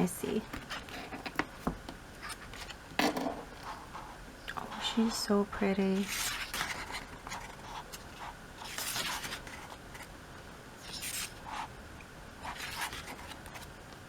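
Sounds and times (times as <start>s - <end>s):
glossy pages rustling: 6.0s - 10.1s, 12.5s - 13.8s.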